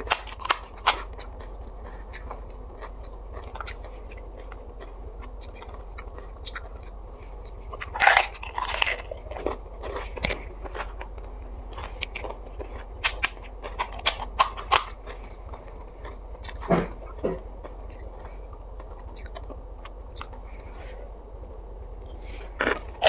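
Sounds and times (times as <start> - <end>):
crisp shells crunching: 0.0 - 1.4, 7.7 - 11.1, 11.8 - 15.4.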